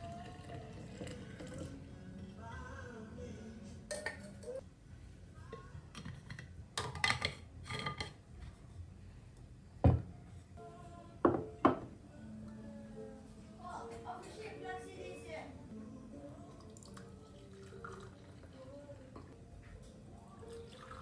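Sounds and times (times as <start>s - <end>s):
dishes and cutlery clinking: 3.9s - 4.6s, 5.5s - 8.8s.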